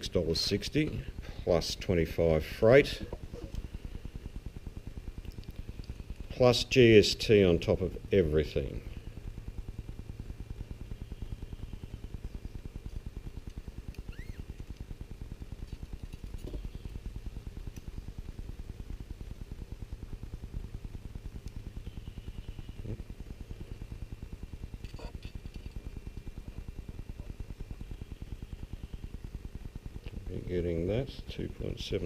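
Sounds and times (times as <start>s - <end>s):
machine low pulsing: 0.0s - 32.0s.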